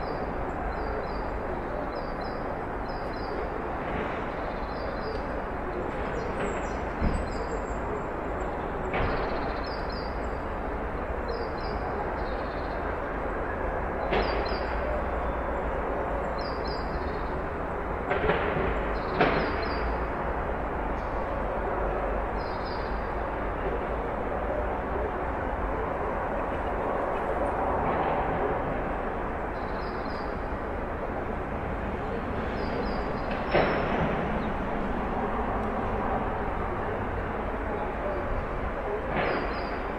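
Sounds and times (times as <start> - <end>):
steady rumbling background noise: 0.0 - 39.9.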